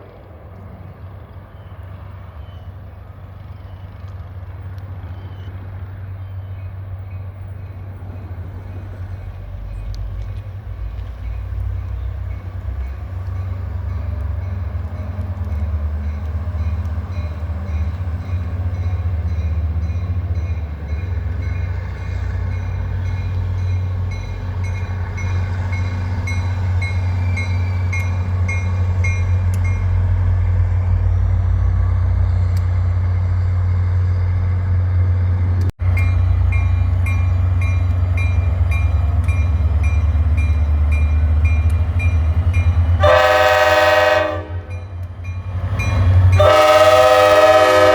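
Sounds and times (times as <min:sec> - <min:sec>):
train rumbling: 0:00.0 - 0:47.9
railroad crossing bell ringing: 0:11.0 - 0:30.2, 0:35.8 - 0:47.9.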